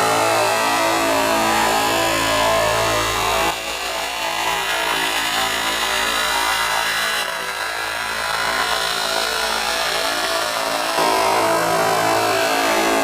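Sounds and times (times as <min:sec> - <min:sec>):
buzzy synthesized voice tone: 0:07.8 - 0:13.0.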